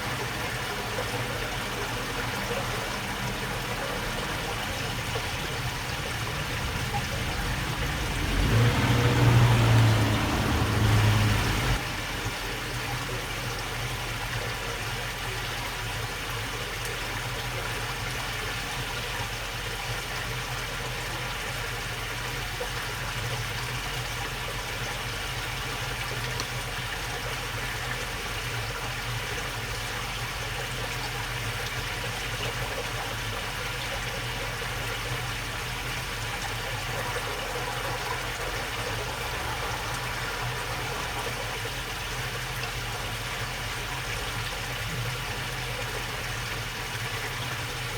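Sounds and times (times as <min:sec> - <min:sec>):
water flowing along a channel: 0:00.0 - 0:47.9
loud low rumble: 0:01.8 - 0:13.1, 0:35.4 - 0:44.3
low hum: 0:35.3 - 0:45.1.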